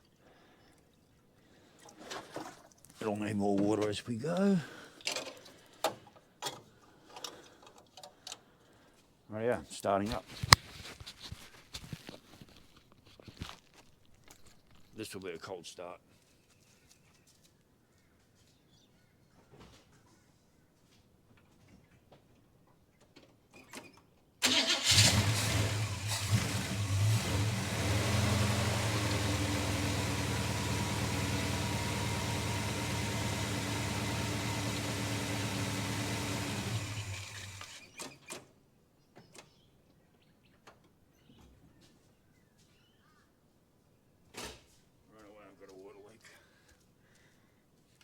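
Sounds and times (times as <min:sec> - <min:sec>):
engine ticking: 0:24.4 - 0:37.8
car engine starting and idling: 0:24.4 - 0:37.9.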